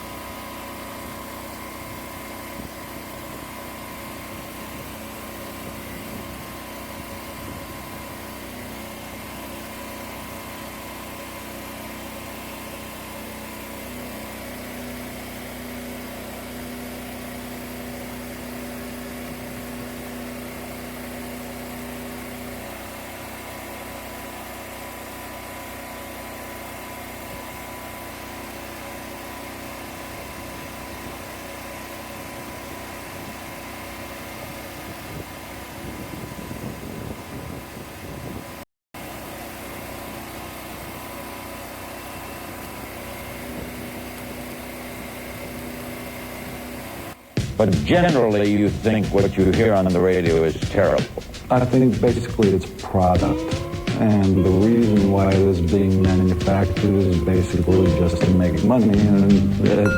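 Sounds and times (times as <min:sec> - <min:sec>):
engine idling: 0:39.8 - 0:59.9.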